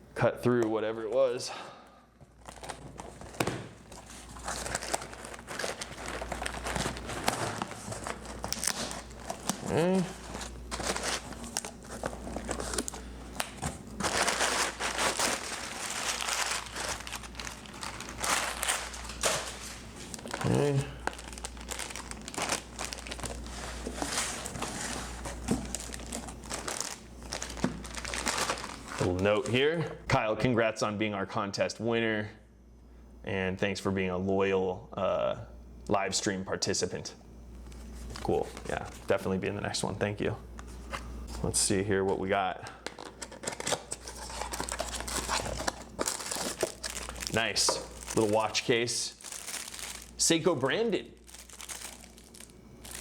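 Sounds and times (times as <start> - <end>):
packaging crinkling rustle: 2.3 - 29.6, 37.6 - 39.2, 42.8 - 53.0.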